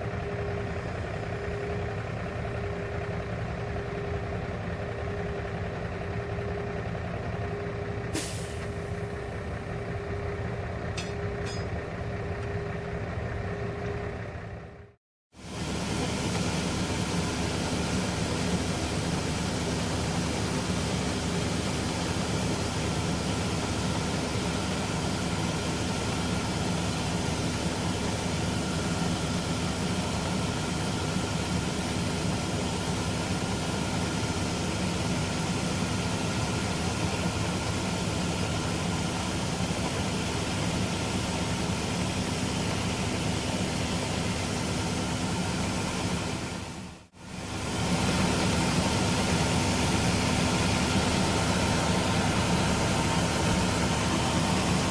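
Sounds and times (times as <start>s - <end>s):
combine harvester engine hum: 0.0s - 54.9s.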